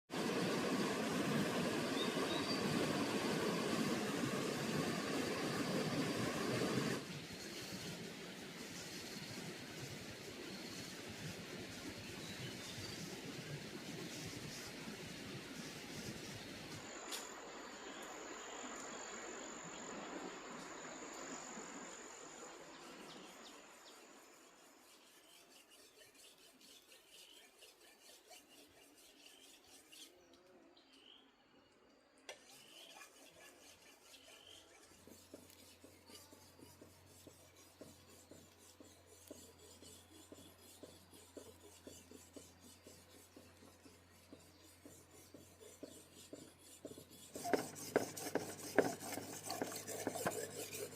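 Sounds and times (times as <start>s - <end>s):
rapid scraping strokes: 23.1s - 30.2s, 32.3s - 50.9s.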